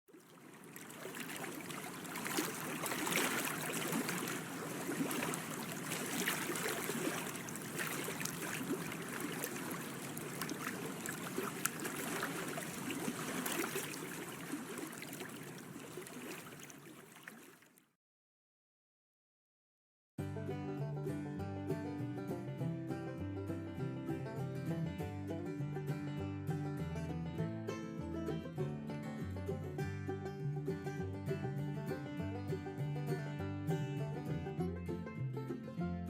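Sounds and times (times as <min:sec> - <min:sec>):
water running and trickling: 0:00.1 - 0:17.8.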